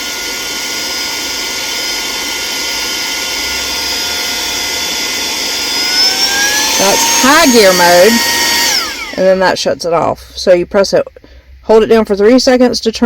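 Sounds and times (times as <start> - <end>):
handheld vacuum motor whine: 0.0 - 9.6.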